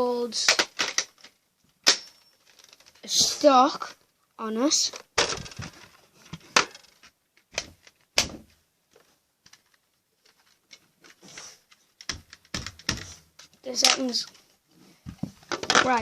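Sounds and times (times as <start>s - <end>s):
faint taps and rustling: 14.3s - 15.8s.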